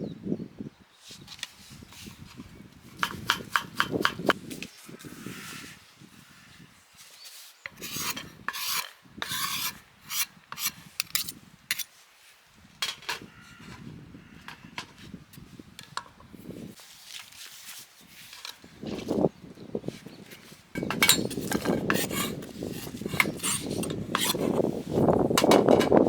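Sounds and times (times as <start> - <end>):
rough rasping scraping: 7.7 - 11.9, 20.8 - 26.0.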